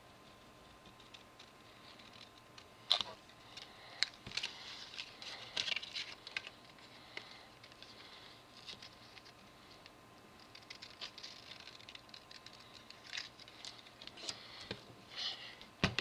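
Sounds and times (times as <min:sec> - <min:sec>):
scratchy paper rasps: 0:10.4 - 0:14.4.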